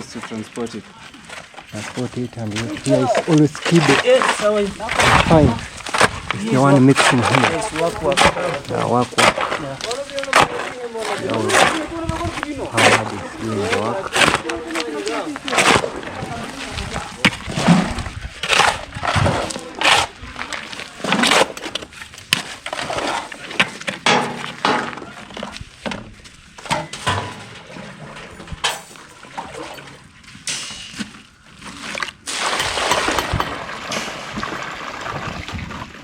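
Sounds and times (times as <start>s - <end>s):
shovels scraping wet concrete: 1.4s - 25.6s, 26.7s - 36.0s.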